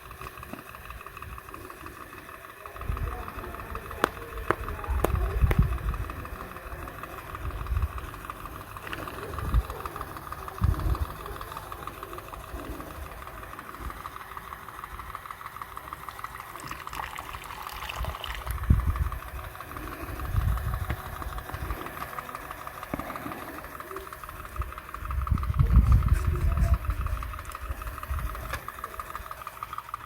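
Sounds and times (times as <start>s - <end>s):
small motor whirring: 0.0s - 30.0s.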